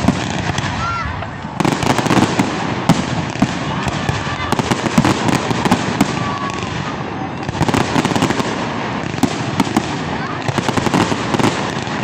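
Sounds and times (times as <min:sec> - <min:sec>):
fireworks crackling and banging: 0:00.0 - 0:12.0.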